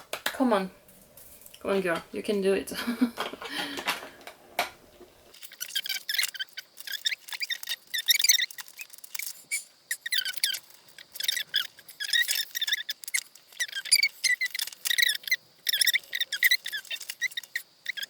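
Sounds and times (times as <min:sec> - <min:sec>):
plastic fasteners squeaking: 0:05.3 - 0:18.0.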